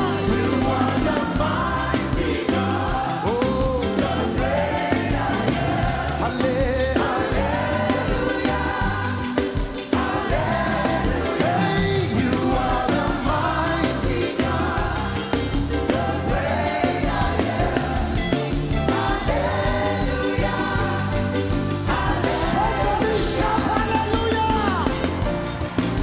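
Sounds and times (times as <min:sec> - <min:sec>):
band bass and drum beat: 0:00.0 - 0:26.0
choir and congregation singing: 0:00.0 - 0:26.0.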